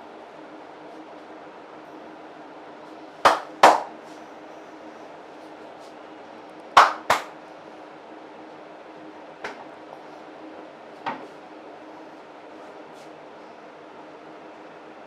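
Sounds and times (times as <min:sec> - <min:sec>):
steady low hum: 0:00.0 - 0:15.0
hands smacking during head massage: 0:06.8 - 0:07.3.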